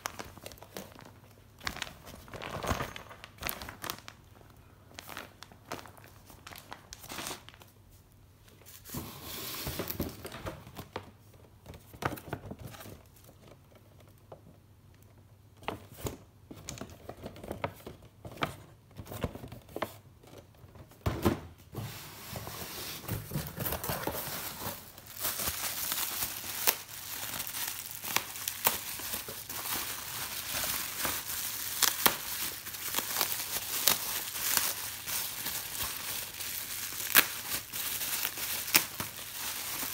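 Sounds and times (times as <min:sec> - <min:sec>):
packaging crinkling and tearing: 0:00.0 - 0:07.7, 0:23.1 - 0:39.9.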